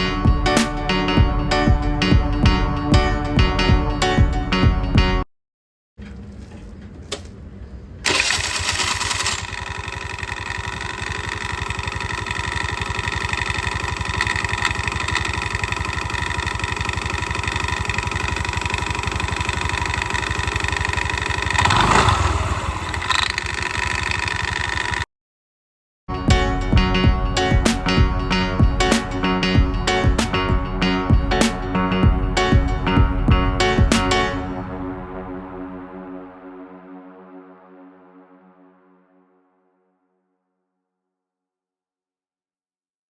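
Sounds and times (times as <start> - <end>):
scooter engine starting and idling: 6.0 - 25.0.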